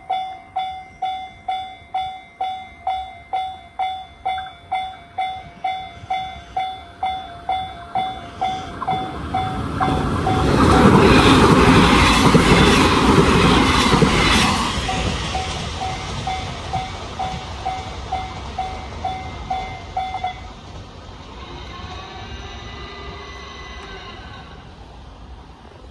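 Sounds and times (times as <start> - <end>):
level crossing warning bell: 0.0 - 12.6, 14.9 - 20.6
train wheels clattering on rails: 0.0 - 21.2.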